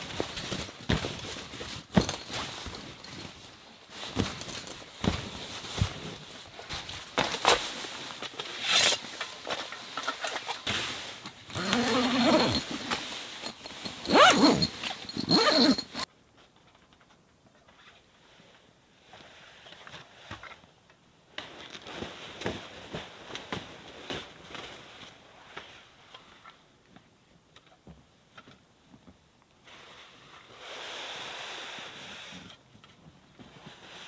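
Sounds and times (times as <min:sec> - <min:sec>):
knocks and rustles: 0:00.0 - 0:08.5.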